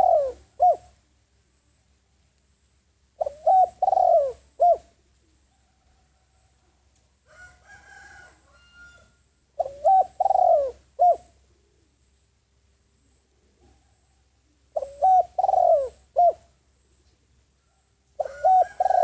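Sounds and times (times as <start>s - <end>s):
dove cooing: 0.0s - 1.0s, 3.2s - 6.2s, 9.6s - 12.0s, 13.4s - 16.6s, 18.1s - 19.0s.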